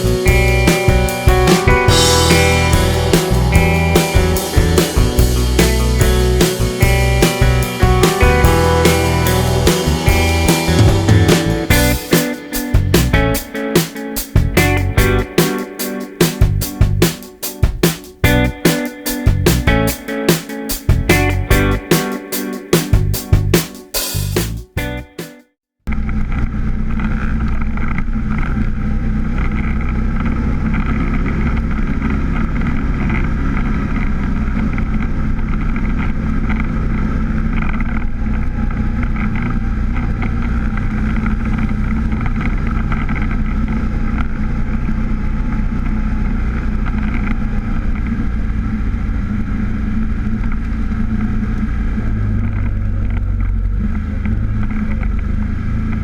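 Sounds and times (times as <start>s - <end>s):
vehicle engine running: 0.0s - 12.1s, 12.8s - 13.4s, 16.4s - 17.0s.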